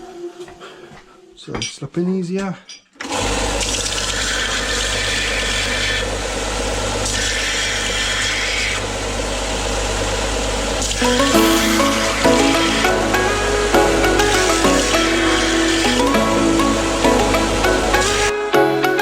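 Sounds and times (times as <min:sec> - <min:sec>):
electric sander sanding wood: 0:11.0 - 0:18.4
music: 0:11.0 - 0:19.0.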